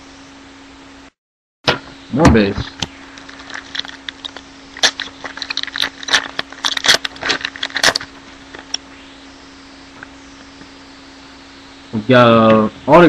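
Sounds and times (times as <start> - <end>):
faint mains hum: 0.0 - 13.0
trading cards and foil pack rustling: 2.6 - 8.8.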